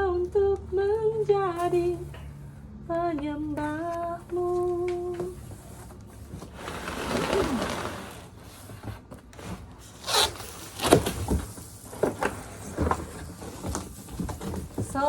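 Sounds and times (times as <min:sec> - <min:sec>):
scraping and rustling: 0:03.6 - 0:15.0.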